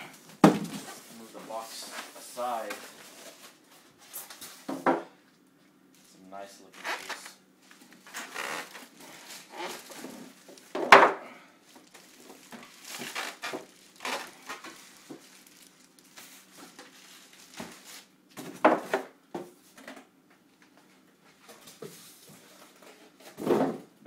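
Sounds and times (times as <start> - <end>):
styrofoam and plastic rustling: 0.6 - 4.7, 6.6 - 10.9, 11.6 - 19.0.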